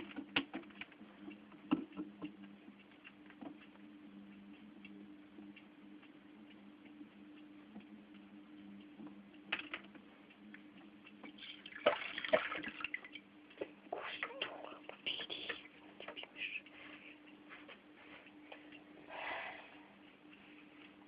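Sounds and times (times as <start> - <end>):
steady low hum: 0.0 - 21.0
water dripping: 11.2 - 13.7
aquarium water sloshing: 11.4 - 13.2.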